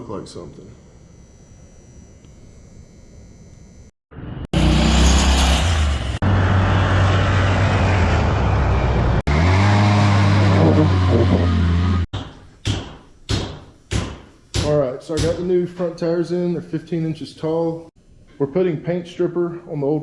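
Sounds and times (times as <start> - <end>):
go-kart engine revving: 4.6 - 12.1.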